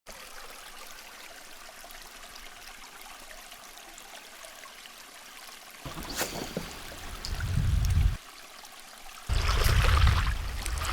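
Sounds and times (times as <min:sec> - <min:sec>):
river water flowing: 0:00.1 - 0:10.9.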